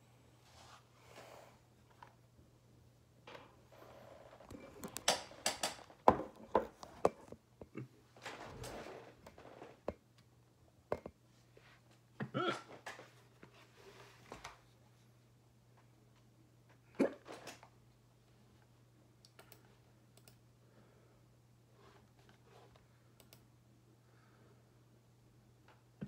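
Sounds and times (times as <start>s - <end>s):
person hiccupping: 7.6s - 8.0s, 12.2s - 12.8s.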